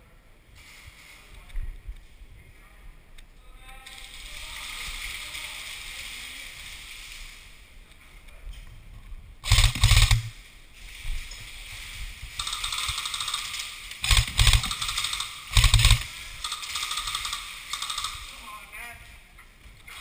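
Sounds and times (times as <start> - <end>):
airsoft rifle full-auto bursts: 9.4 - 10.4, 12.4 - 18.5
faint rapid airsoft fire: 9.4 - 10.4, 12.4 - 18.5.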